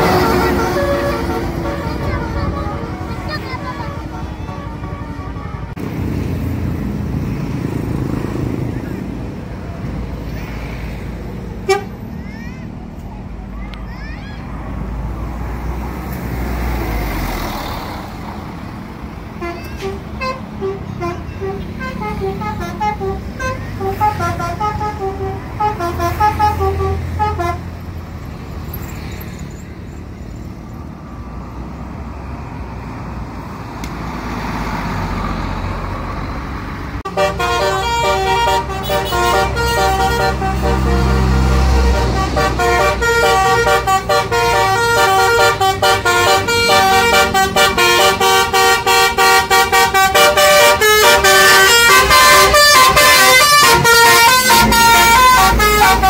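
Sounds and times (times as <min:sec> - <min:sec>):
bus melody horn: 0:00.0 - 0:05.9, 0:11.6 - 0:12.0, 0:19.3 - 0:27.9, 0:37.1 - 0:56.0
bus engine rumbling: 0:00.0 - 0:56.0.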